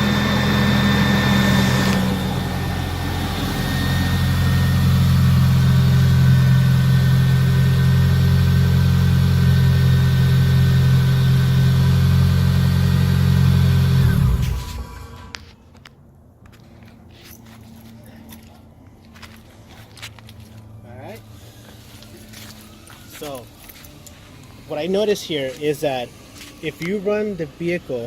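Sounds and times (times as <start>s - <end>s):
car engine idling: 0.0s - 15.5s.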